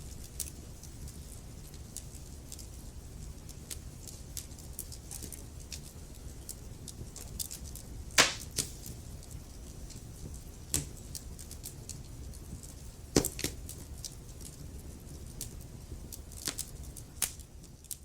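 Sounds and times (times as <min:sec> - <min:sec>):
wood fire crackling: 0:00.0 - 0:18.0
fire popping: 0:02.6 - 0:18.0.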